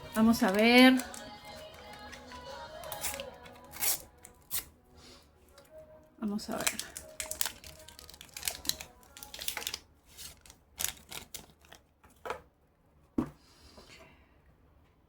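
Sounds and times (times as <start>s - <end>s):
sticker packet crackling and rustling: 0.2s - 4.7s, 6.5s - 11.9s.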